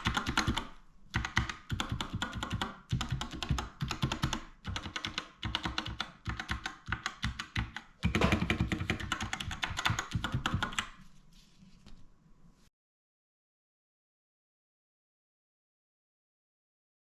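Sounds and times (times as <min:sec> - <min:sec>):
fast keyboard typing: 0:00.0 - 0:11.0.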